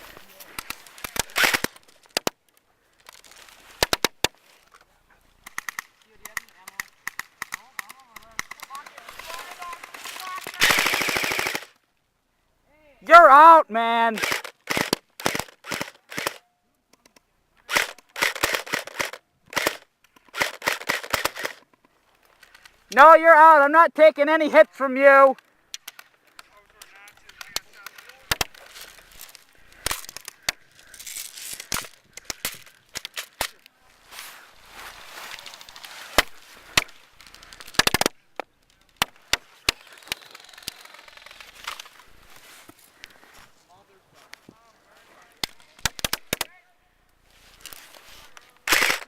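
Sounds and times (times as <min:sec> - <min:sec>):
airsoft guns firing bursts: 0:05.4 - 0:11.8, 0:14.1 - 0:16.4, 0:17.7 - 0:21.6.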